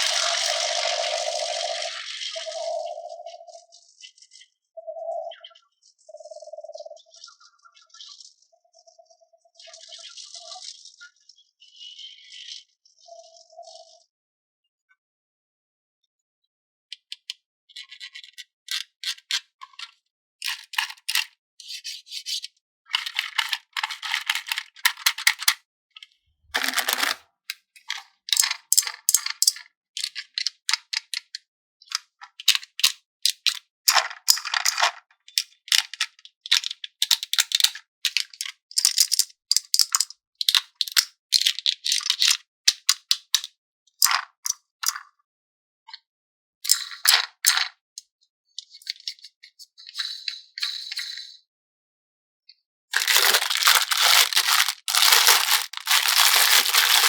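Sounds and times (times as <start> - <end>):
plastic packaging crinkling and rattling: 23.0 - 25.6, 26.6 - 27.2, 53.0 - 57.0.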